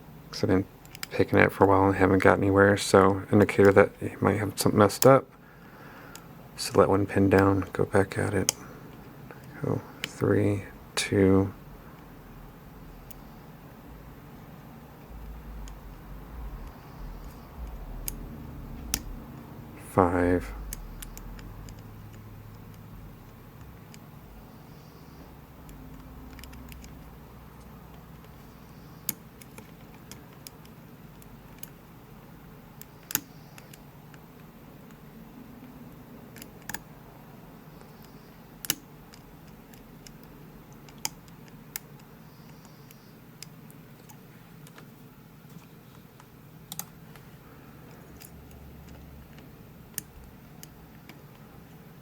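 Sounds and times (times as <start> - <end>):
faint steady hum: 0.0 - 52.0
lock pick clicking on pins: 32.8 - 34.2, 36.3 - 36.9, 38.6 - 42.6, 46.2 - 47.0.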